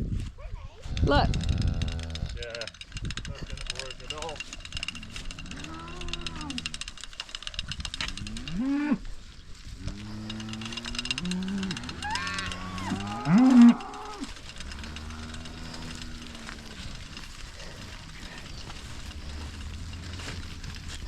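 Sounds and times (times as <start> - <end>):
cattle mooing: 1.5 - 2.5, 4.6 - 7.0, 8.0 - 9.2, 9.8 - 21.0.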